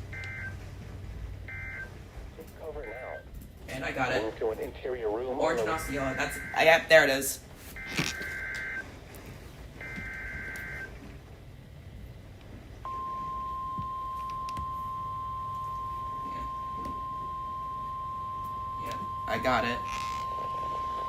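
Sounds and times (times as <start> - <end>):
steady alert tone: 5.6 - 7.0, 12.9 - 21.0
raspy two-tone data bursts: 5.7 - 6.9.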